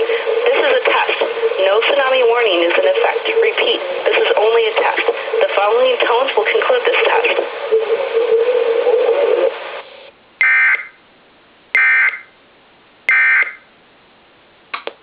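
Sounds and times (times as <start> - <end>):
radio audio: 0.0 - 10.9.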